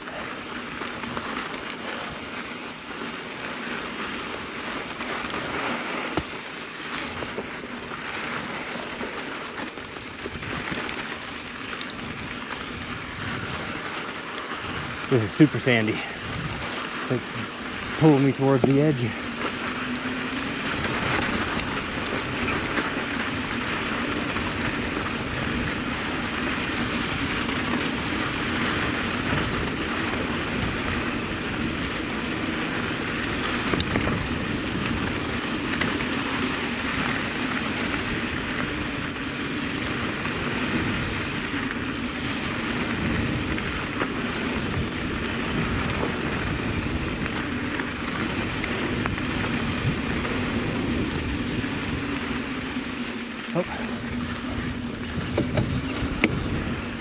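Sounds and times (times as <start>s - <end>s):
bike tyres on sand and dirt: 0.0s - 57.0s
wind on microphone: 16.2s - 18.3s, 19.0s - 57.0s.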